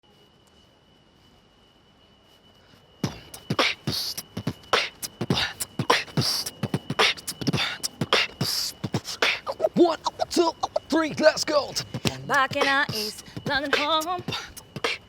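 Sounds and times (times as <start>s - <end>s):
beatboxing vocal beat: 3.0s - 15.0s.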